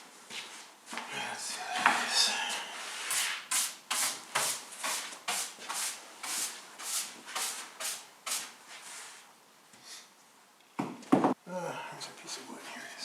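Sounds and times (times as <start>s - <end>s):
rubbing strokes on wood: 1.5s - 9.3s.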